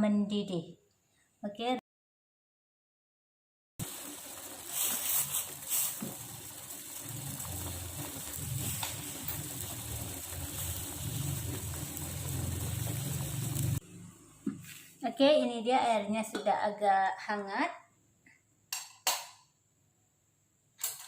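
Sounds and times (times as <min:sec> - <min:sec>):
pot hissing on stove: 0:03.8 - 0:15.0.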